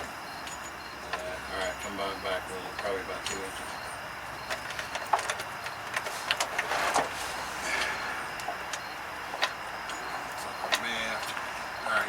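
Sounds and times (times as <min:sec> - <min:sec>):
rattling scrape: 0:06.0 - 0:07.9.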